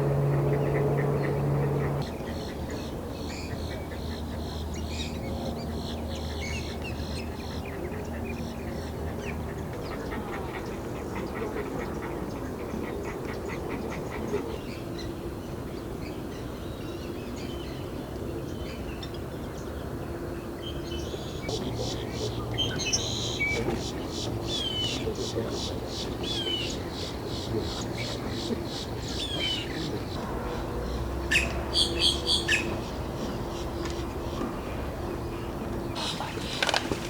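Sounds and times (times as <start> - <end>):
low steady hum: 0.0 - 10.9
wetland birds calling: 30.9 - 37.0.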